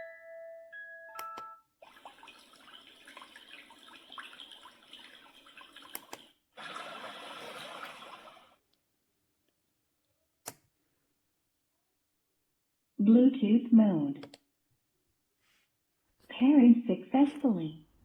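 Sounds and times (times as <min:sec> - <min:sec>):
running water from speaker: 0:01.8 - 0:08.6.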